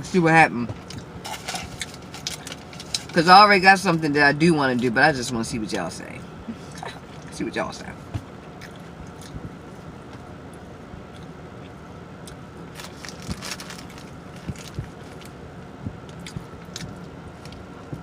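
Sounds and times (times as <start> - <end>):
car cabin hum: 0.0 - 18.0
person chewing food: 8.4 - 18.0.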